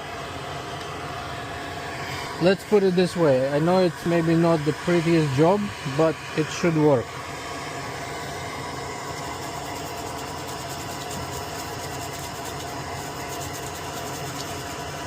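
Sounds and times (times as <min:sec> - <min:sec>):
fan whirring: 0:00.0 - 0:15.0.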